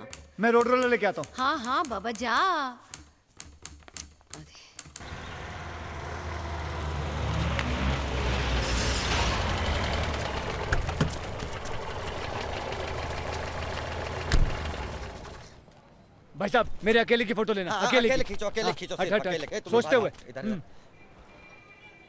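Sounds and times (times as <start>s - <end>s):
diesel engine droning: 5.0s - 15.6s
hiss: 8.5s - 9.4s
thump: 14.3s - 14.6s.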